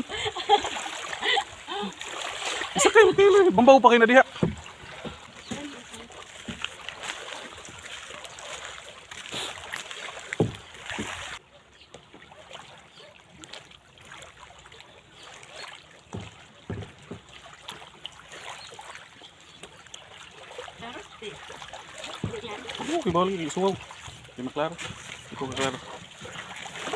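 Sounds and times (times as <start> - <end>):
water splashing and lapping: 0.0 - 26.9
short knocks: 4.2 - 5.7.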